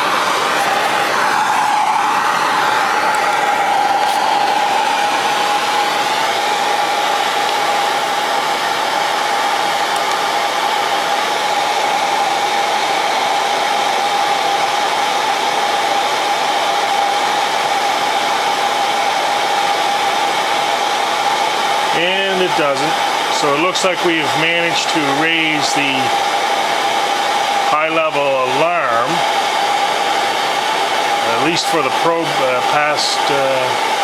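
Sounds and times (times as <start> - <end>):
heat gun blowing with fan whine: 0.0 - 34.0.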